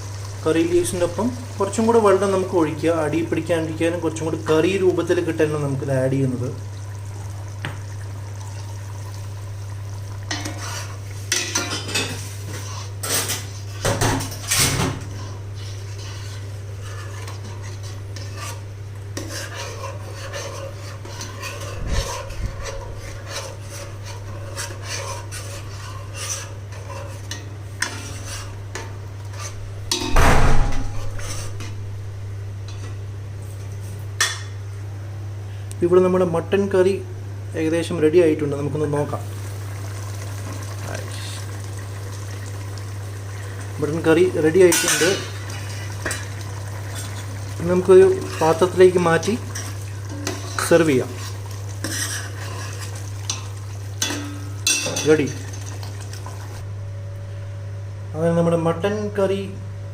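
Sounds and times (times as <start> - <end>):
spoon scraping cooking pot: 10.3 - 30.1, 30.9 - 31.8, 44.6 - 55.2.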